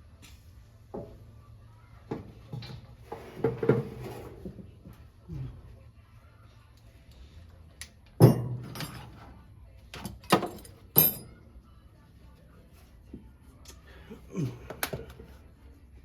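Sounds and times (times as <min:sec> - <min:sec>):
metal tools clanking: 0:08.2 - 0:09.3, 0:09.9 - 0:11.4.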